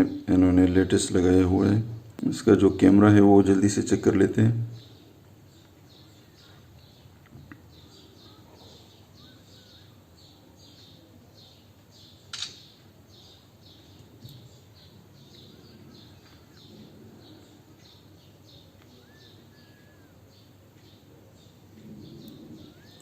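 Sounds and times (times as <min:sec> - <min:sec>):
faint bird chirping: 0:00.0 - 0:23.0
sharp click: 0:12.3 - 0:12.7.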